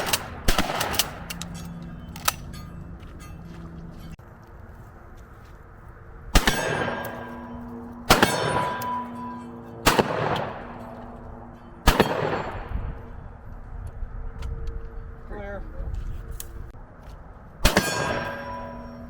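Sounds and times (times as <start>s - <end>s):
shotgun shots: 0.0s - 1.3s, 6.3s - 7.3s, 8.0s - 9.0s, 9.8s - 10.8s, 11.8s - 12.7s, 17.6s - 18.4s
steel target clanging: 0.0s - 4.2s, 6.4s - 12.7s, 17.6s - 19.0s.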